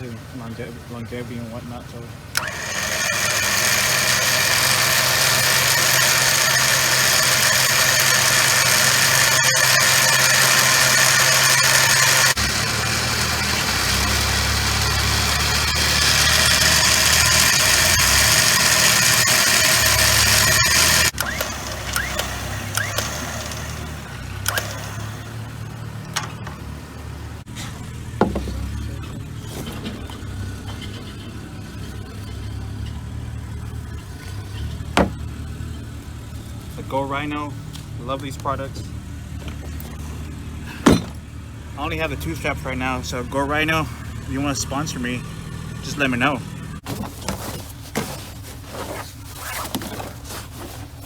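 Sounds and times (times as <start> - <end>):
clicks: 2.3 - 12.4, 15.3 - 25.3
electric winch motor running: 2.3 - 47.5.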